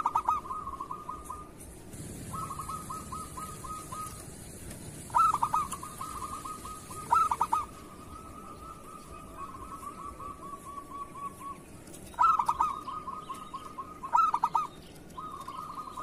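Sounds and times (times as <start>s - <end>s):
dove cooing: 0.0s - 16.0s.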